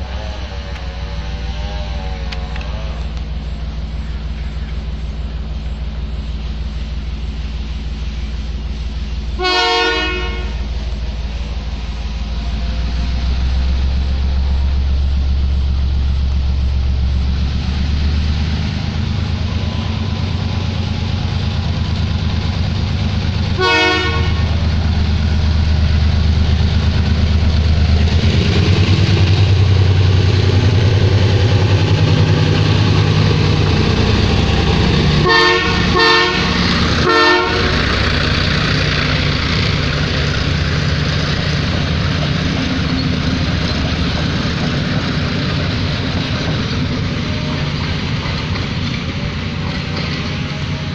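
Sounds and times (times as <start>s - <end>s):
diesel locomotive engine running: 0.0s - 50.9s
short train horn toots: 9.4s - 10.7s, 23.6s - 24.6s, 35.2s - 37.9s.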